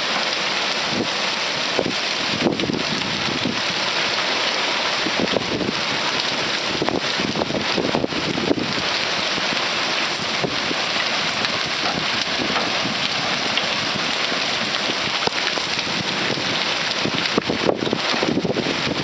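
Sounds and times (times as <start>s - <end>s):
heavy rain pouring: 0.0s - 19.0s
sharp raindrop hits: 0.0s - 19.0s.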